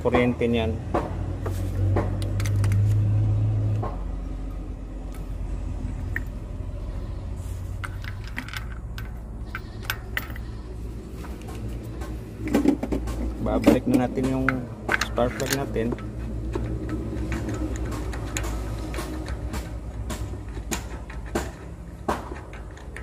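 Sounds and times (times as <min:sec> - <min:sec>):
metallic clicks of parts: 0:02.1 - 0:03.0, 0:07.8 - 0:10.6, 0:11.4 - 0:23.0.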